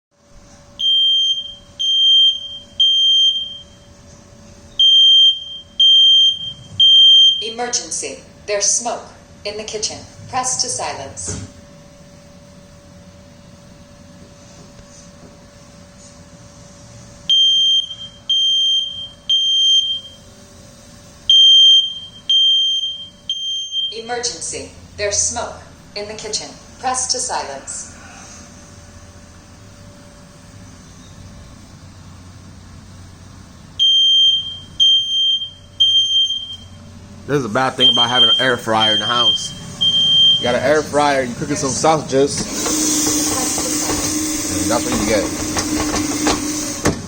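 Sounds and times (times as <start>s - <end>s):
smoke detector alarm beeps: 0.8s - 4.0s, 4.7s - 7.7s, 17.3s - 20.3s, 21.3s - 24.4s, 33.8s - 36.9s, 37.8s - 41.1s.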